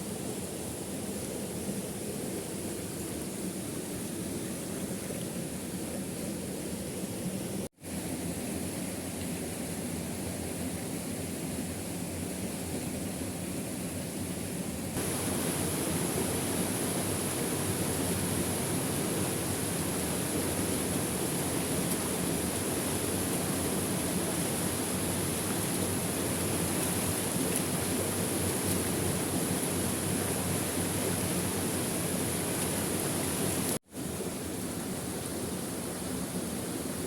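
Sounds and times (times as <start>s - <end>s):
waterfall rushing: 15.0s - 33.8s.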